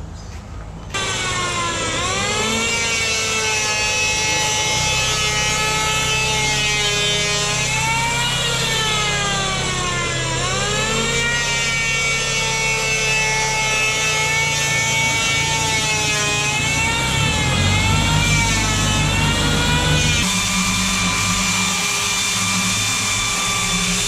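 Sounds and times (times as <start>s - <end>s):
chainsaw cutting timber: 1.0s - 24.0s.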